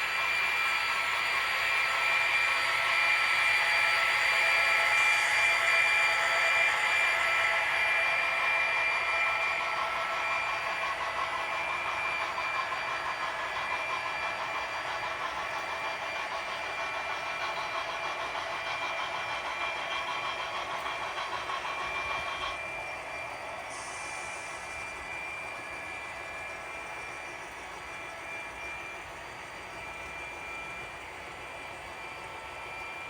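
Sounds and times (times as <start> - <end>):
model locomotive engine sound: 0.0 - 33.0.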